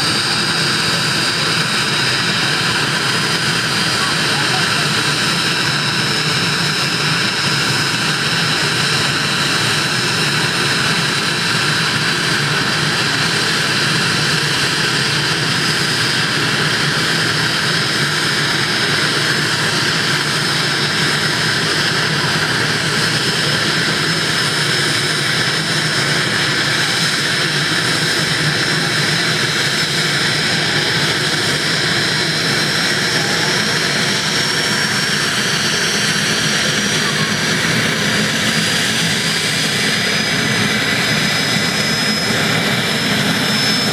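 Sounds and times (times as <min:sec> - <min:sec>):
helicopter turbine whine: 0:00.0 - 0:43.9.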